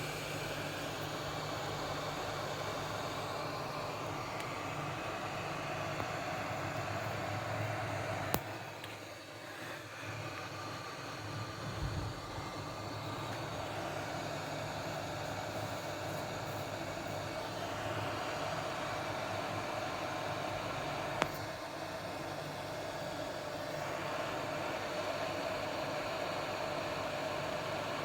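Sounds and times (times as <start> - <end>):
hot air station blowing: 0.0 - 28.0.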